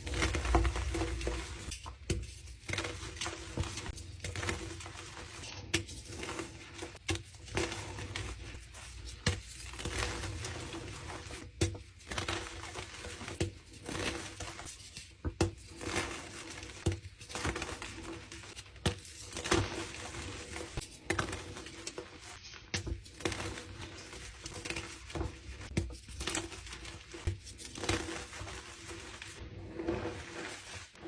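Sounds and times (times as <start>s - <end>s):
chalk crumbling: 0.0s - 31.0s
chalk crunching: 23.2s - 31.0s.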